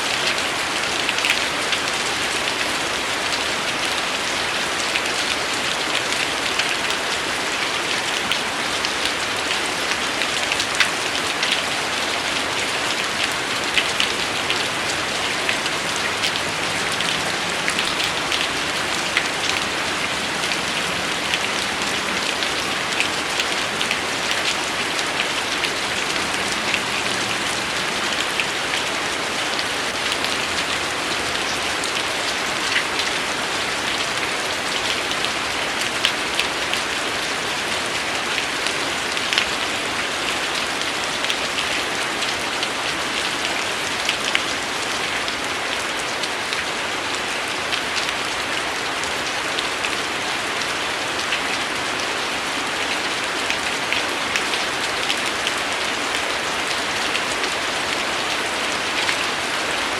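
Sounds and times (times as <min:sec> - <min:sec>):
steady rain hiss: 0:00.0 - 0:59.9
raindrops ticking: 0:01.0 - 0:39.7, 0:53.5 - 0:59.4.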